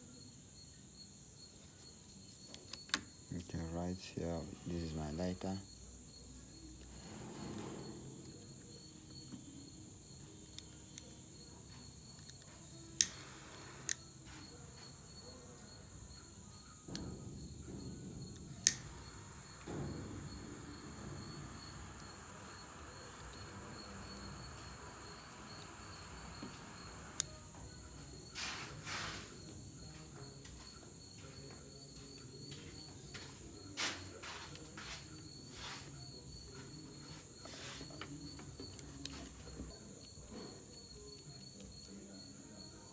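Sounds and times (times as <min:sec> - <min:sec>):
crickets chirping: 0:00.0 - 0:42.9
gas lighter clicks: 0:12.3 - 0:14.0, 0:18.6 - 0:19.1
torch flame hissing: 0:12.6 - 0:14.0, 0:18.2 - 0:27.5, 0:28.2 - 0:29.4.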